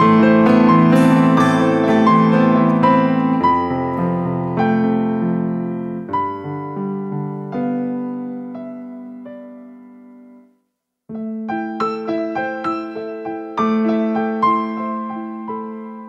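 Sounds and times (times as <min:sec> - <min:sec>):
slow piano melody: 0:00.0 - 0:16.0.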